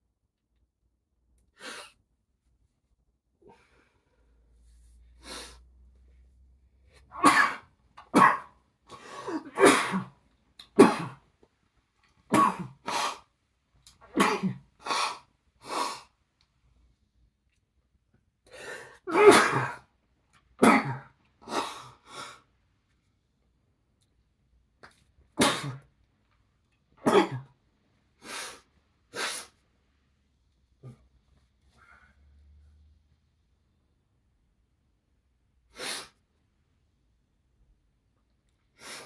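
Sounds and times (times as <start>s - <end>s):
man sneezing: 7.1s - 7.6s, 9.1s - 10.1s, 14.1s - 15.2s, 19.1s - 19.8s, 25.4s - 25.8s.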